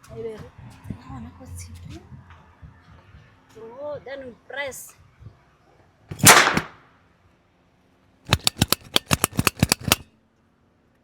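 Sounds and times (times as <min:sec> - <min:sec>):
nail gun firing: 0:06.1 - 0:06.8, 0:08.3 - 0:10.1.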